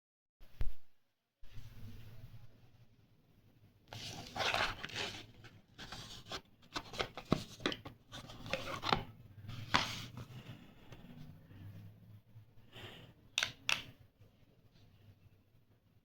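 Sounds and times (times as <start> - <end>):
rubbing and rustling handling noise: 3.9 - 11.4.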